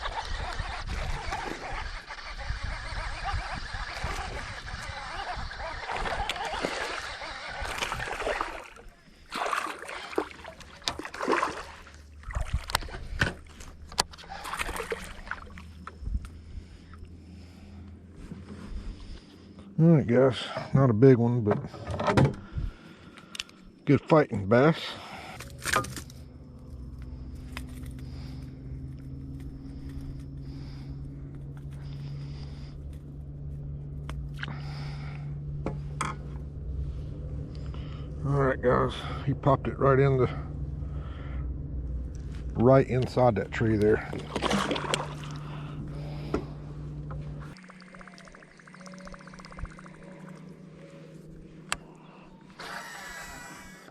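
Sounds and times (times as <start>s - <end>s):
water splashing against boat: 4.0s - 16.8s, 42.6s - 48.5s
low steady hum: 5.8s - 53.9s
electric motor humming: 45.0s - 53.9s.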